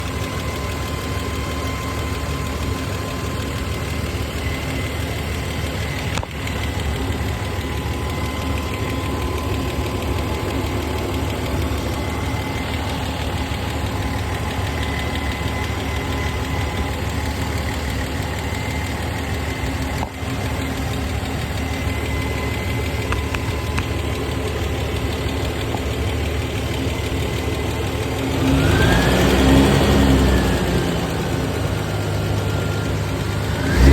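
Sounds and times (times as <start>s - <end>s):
engine idling with ticking: 0.0s - 33.9s
engine revving: 27.3s - 33.9s.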